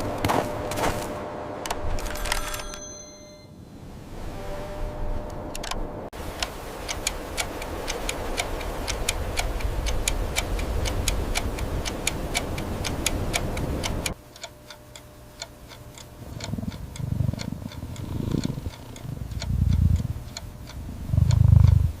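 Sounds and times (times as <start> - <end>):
steady noisy background: 0.0 - 2.7
clock ticking: 6.4 - 22.0.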